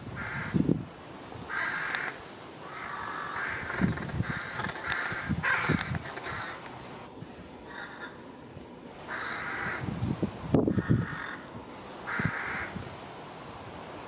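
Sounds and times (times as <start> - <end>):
crows cawing: 0.2 - 0.6, 1.5 - 6.7, 7.7 - 8.2, 9.1 - 9.9, 10.7 - 12.8.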